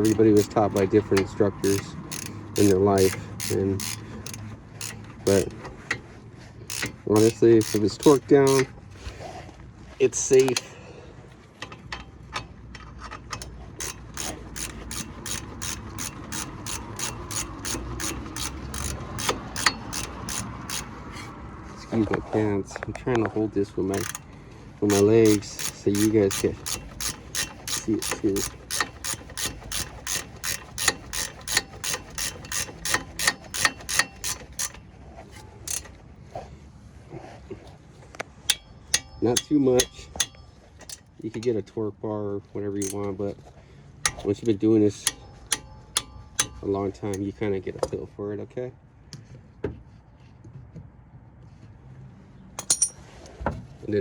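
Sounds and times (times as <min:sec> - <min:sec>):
ratchet wrench clicking: 0:00.0 - 0:06.0, 0:06.7 - 0:08.7, 0:10.2 - 0:10.7, 0:11.6 - 0:21.3, 0:23.8 - 0:36.0, 0:38.5 - 0:41.5, 0:44.0 - 0:47.2.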